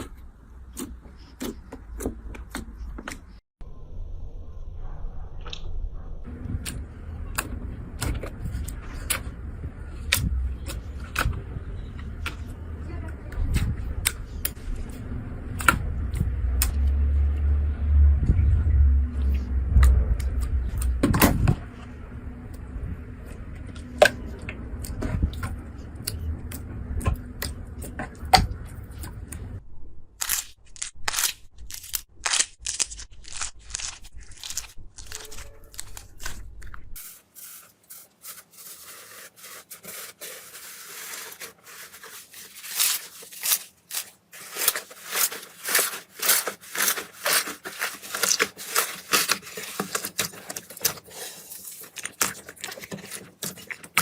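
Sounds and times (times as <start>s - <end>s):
crunchy slime squishes: 0.0s - 3.4s, 6.3s - 29.6s, 30.2s - 54.0s
low handling rumble: 3.6s - 30.2s.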